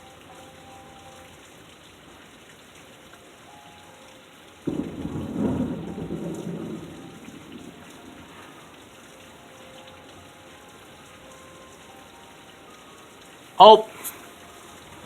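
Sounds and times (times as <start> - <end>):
steady rain: 0.0 - 15.0
thunder clap rumbling: 4.6 - 8.8.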